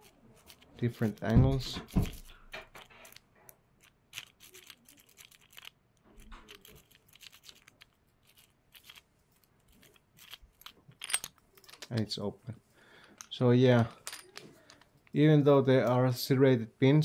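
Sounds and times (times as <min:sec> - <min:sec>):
lock pick scratching in padlock: 0:00.0 - 0:11.4.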